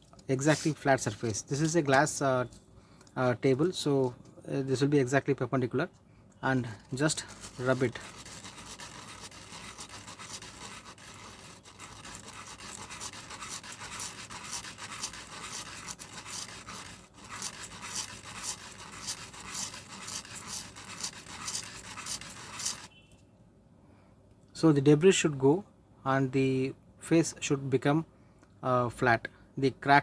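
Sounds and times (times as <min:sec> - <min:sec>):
plastic rubbed on sandpaper: 0:00.4 - 0:01.8, 0:06.6 - 0:22.9.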